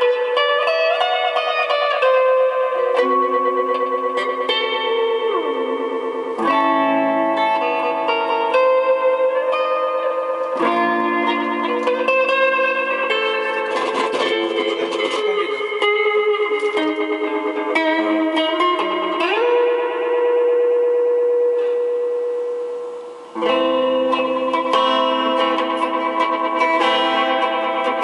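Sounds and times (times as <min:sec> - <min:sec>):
guitar with delay effect: 0:00.0 - 0:28.0.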